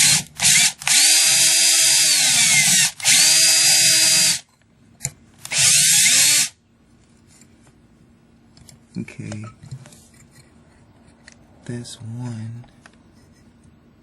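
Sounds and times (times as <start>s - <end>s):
power drill motor whine: 0.0s - 4.4s, 5.4s - 6.6s.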